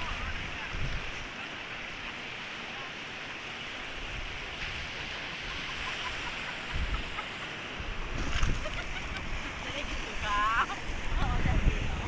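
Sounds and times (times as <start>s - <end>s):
waves washing on sand: 0.0s - 12.0s
wind buffeting microphone: 6.6s - 12.0s.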